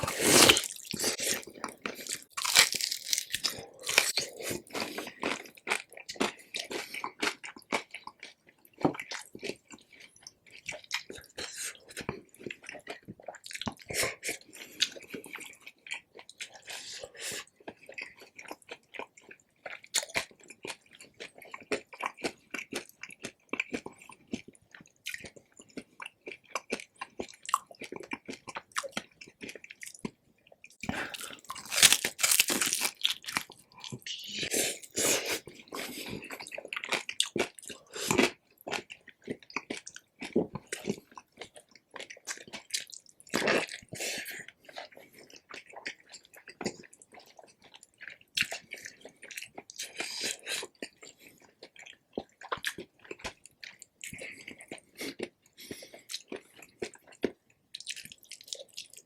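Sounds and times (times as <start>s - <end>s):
crunching of crispy skin: 0.0s - 5.2s, 30.8s - 34.2s
wet chewing: 0.0s - 59.0s.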